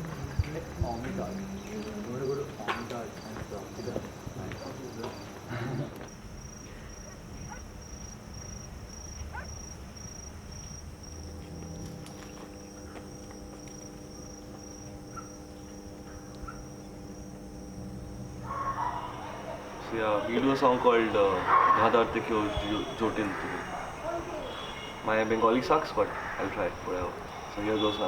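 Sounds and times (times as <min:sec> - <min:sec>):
cricket chirping: 0:00.0 - 0:28.0
steady low hum: 0:00.0 - 0:28.0
low background rumble: 0:06.2 - 0:27.8.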